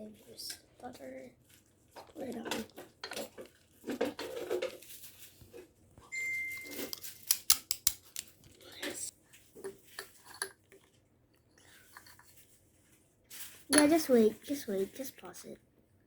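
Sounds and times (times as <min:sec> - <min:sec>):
steady high tone: 0:06.1 - 0:06.9.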